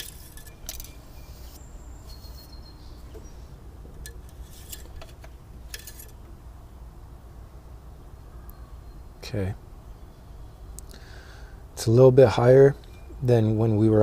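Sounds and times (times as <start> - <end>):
small birds chirping: 0.0 - 3.9, 8.1 - 14.0.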